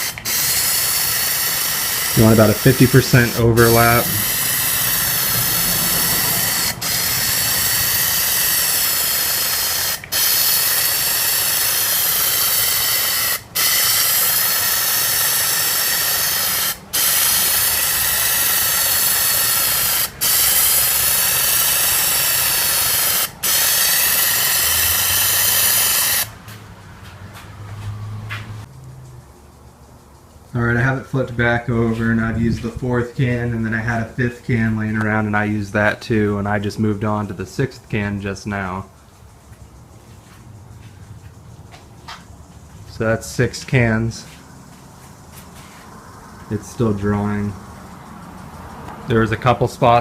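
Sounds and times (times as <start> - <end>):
aerosol can spraying: 0.0 - 26.3.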